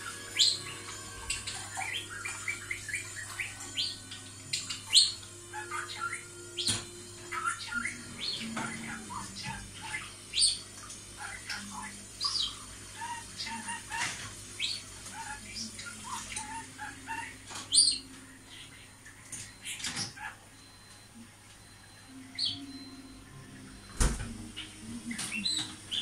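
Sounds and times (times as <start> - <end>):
budgerigar warbling: 0.3 - 10.6, 11.2 - 19.0.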